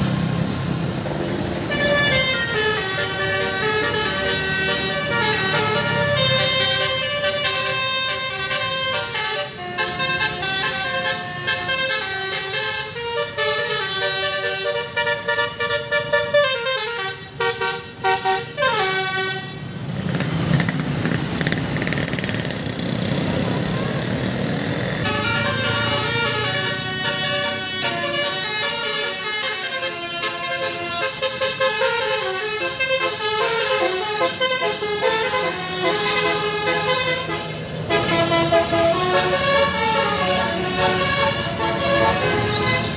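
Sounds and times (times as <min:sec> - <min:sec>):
musical bus horn tune: 0:01.5 - 0:19.9, 0:25.0 - 0:42.9.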